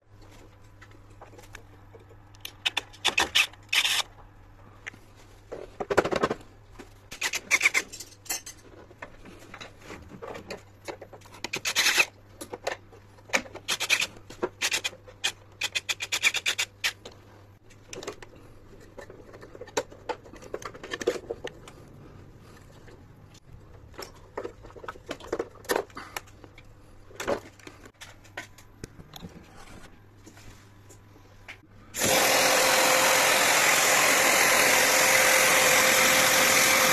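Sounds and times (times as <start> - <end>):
metallic tool clinks and rattles: 7.6 - 8.7.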